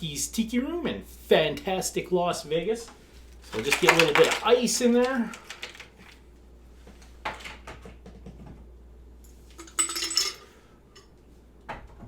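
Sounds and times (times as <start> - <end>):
ice cubes clinking into mug: 3.5 - 6.2.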